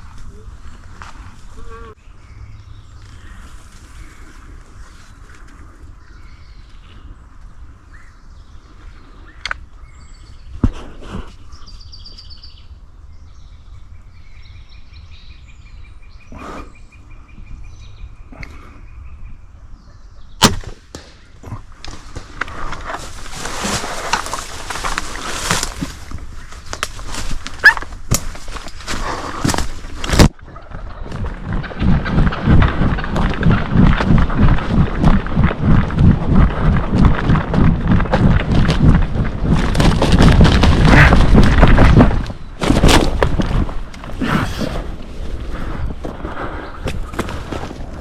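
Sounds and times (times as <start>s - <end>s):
sharp bow snap: 20.4s - 21.2s
loud rustling with knocks: 21.9s - 44.2s.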